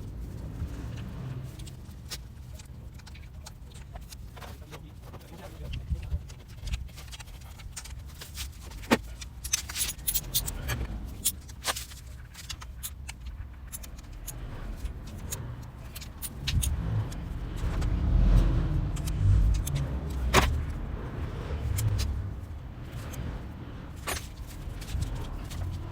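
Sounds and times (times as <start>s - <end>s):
metallic clicks of hand tools: 8.9s - 17.9s, 18.8s - 20.7s
low rumble: 13.2s - 25.9s.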